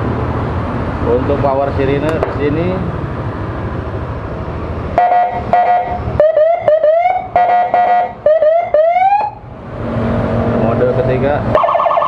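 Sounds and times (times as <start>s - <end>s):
electronic siren whooping: 5.0s - 9.4s, 11.5s - 12.0s.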